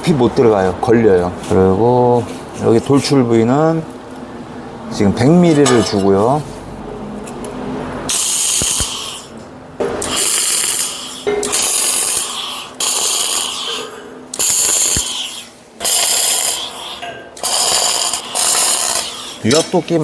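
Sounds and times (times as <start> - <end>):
electric arc welder bursts: 8.1 - 19.6.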